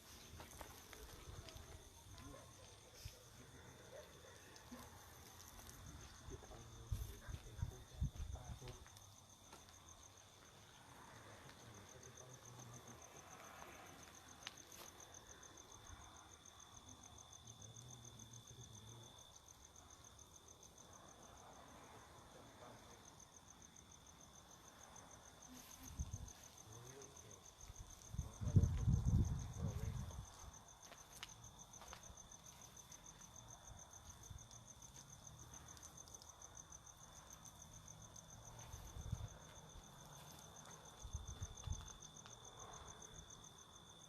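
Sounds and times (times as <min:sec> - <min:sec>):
crickets chirping: 0:00.0 - 0:44.0
low insect tone: 0:00.0 - 0:44.0.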